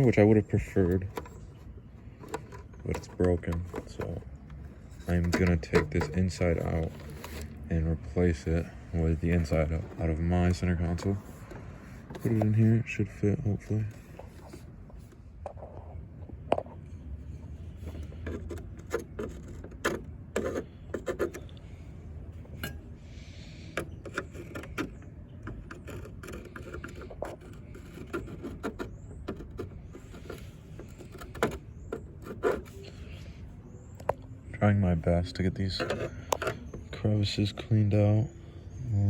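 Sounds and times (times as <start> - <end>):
hard plastic clicks and scrapes: 0.0 - 17.0, 17.7 - 21.8, 22.4 - 34.4, 35.3 - 37.6.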